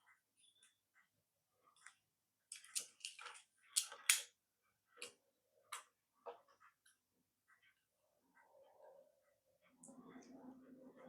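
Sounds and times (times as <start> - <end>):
plastic toy parts clicking: 2.5 - 4.3.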